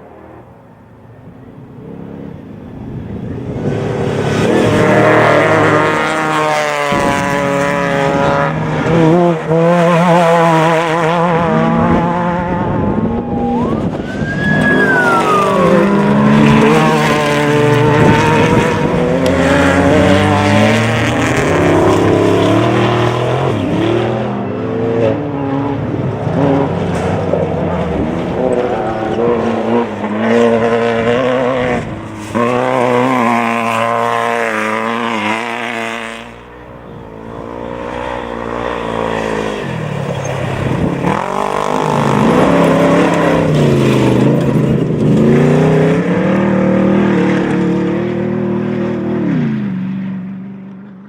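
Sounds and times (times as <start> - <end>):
race vehicle engine revving: 3.0 - 51.0
whine: 11.2 - 20.2.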